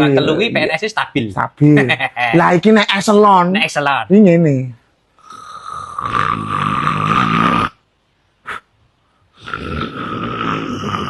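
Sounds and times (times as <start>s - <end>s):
man imitating snoring: 5.2s - 7.8s, 9.4s - 11.0s
short snort: 8.4s - 8.7s.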